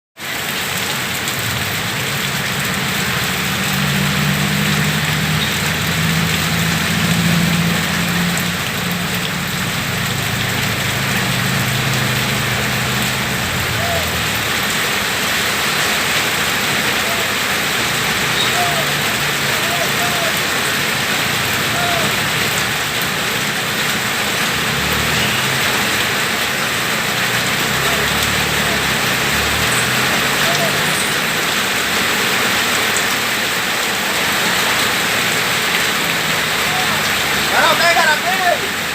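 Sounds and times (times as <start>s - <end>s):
heavy rain falling: 0.2s - 38.9s
vehicle engine humming: 0.3s - 38.9s.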